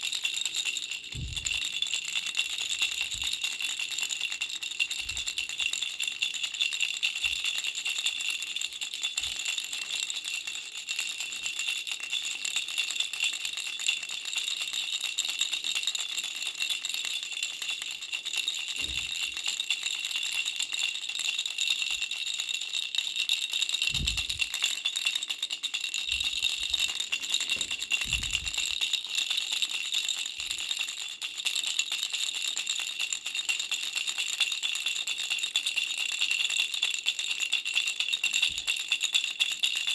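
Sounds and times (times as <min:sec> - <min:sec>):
baby rattle shaking: 0:00.0 - 0:13.9, 0:14.6 - 0:39.9
soft low thumps: 0:01.2 - 0:01.8, 0:23.9 - 0:24.6, 0:26.2 - 0:28.7.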